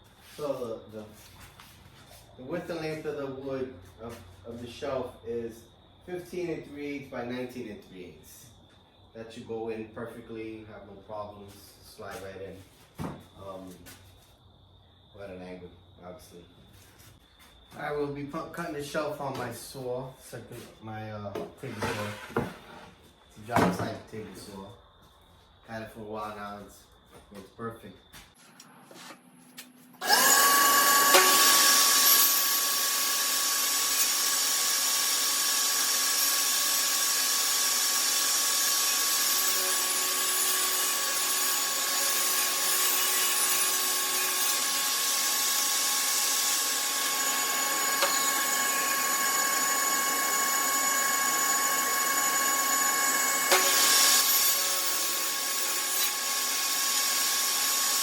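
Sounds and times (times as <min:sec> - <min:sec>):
table saw motor whine: 0:28.5 - 0:58.0.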